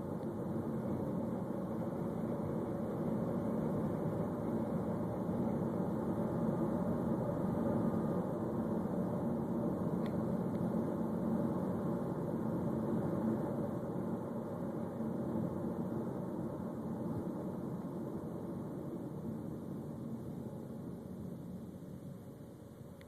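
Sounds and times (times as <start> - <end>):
faint click: 10.0 - 10.7.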